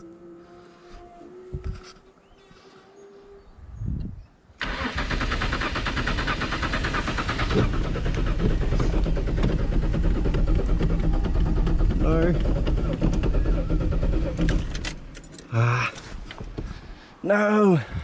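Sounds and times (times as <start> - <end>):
car engine cranking on starter: 4.6 - 16.5.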